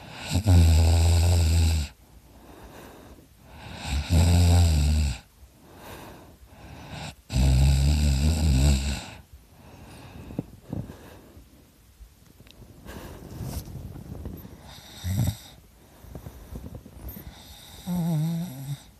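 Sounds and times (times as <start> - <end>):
loud low snoring: 0.0 - 2.0, 3.5 - 5.3, 6.9 - 9.2, 14.6 - 15.6, 17.1 - 18.9
quiet breaths: 0.0 - 18.9.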